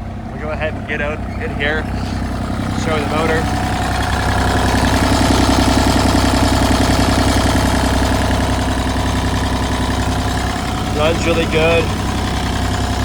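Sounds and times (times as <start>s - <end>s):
diesel engine idling: 0.0s - 13.0s.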